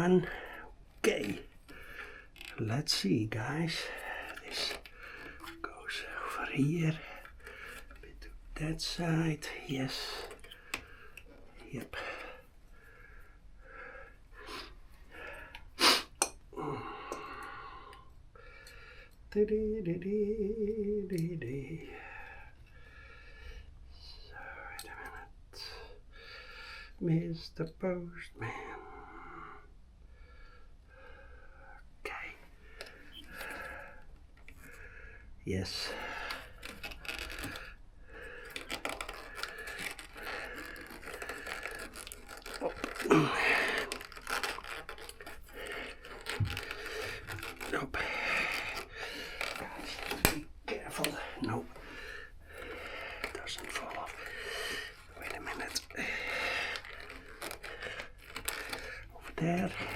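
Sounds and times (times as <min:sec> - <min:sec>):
hoses and fittings handled: 0:00.0 - 0:12.8, 0:32.7 - 0:34.8, 0:35.7 - 0:59.9
man exhaling and humming: 0:42.6 - 0:44.6.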